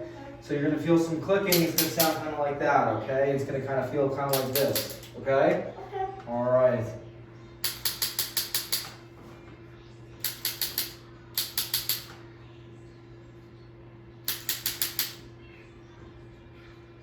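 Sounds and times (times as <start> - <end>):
faint low hum: 9.3 - 17.0.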